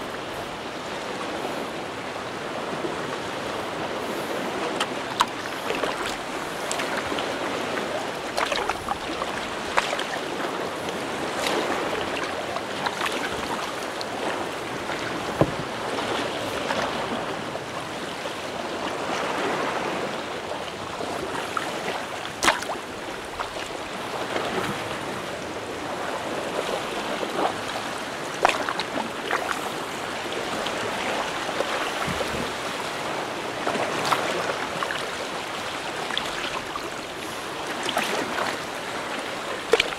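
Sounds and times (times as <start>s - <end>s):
water sloshing around a kayak: 0.0s - 39.9s
brief sharp splashes or knocks: 22.4s - 22.8s.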